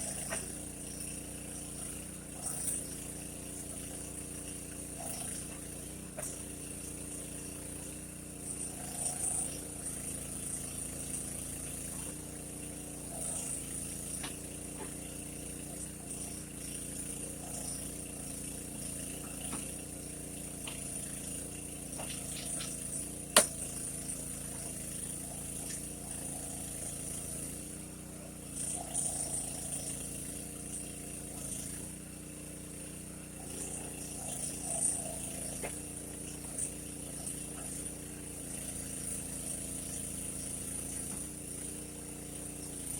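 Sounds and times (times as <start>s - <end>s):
small engine running: 0.0s - 42.9s
sharp click: 23.3s - 23.6s.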